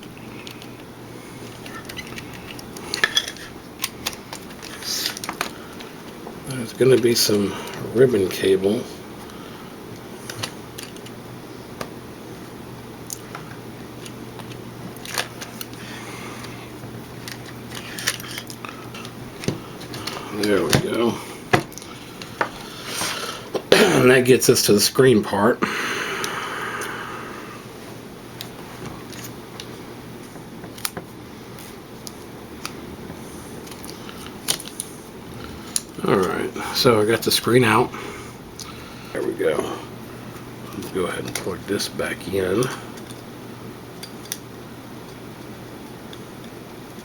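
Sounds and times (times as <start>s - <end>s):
steady low hum: 0.0s - 47.0s.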